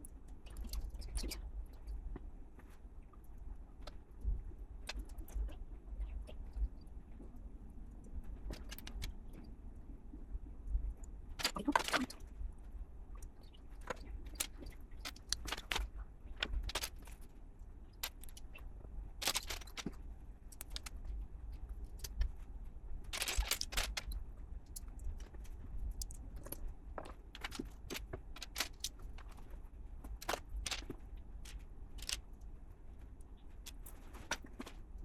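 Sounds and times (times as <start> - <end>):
plastic bricks clicking: 19.2 - 20.0, 23.1 - 24.2, 30.2 - 32.2
plastic pieces rattling: 19.2 - 20.0, 23.1 - 24.2, 27.4 - 29.4, 30.2 - 32.2.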